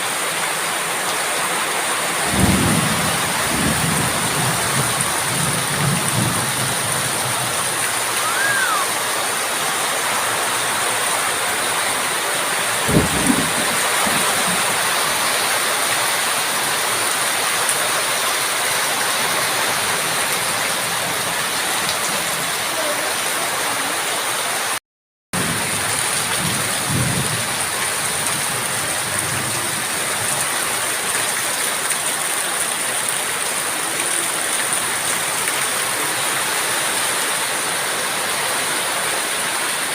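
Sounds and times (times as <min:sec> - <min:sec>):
heavy rain: 0:00.0 - 0:24.8, 0:25.4 - 0:39.9
thunder rumbling: 0:02.3 - 0:08.6, 0:12.8 - 0:14.8, 0:25.4 - 0:30.4.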